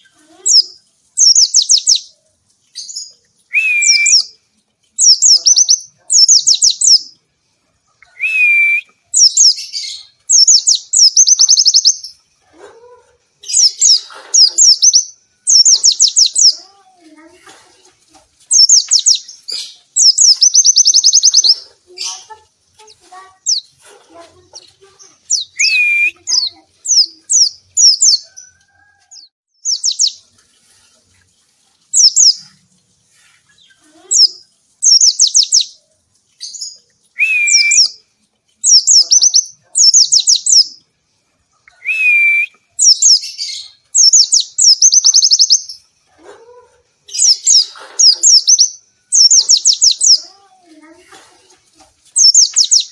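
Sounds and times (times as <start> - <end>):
bird chattering song: 0.0 - 2.2, 2.8 - 4.4, 5.0 - 7.2, 8.0 - 12.2, 13.4 - 17.3, 18.5 - 22.4, 23.2 - 28.5, 29.2 - 30.3, 31.9 - 32.6, 33.5 - 35.8, 37.5 - 38.0, 38.6 - 40.8, 42.8 - 45.8, 47.1 - 50.4, 52.2 - 52.9
lower whistled bird notes: 3.5 - 4.4, 8.1 - 11.9, 25.3 - 28.2, 37.2 - 38.0, 41.7 - 45.5.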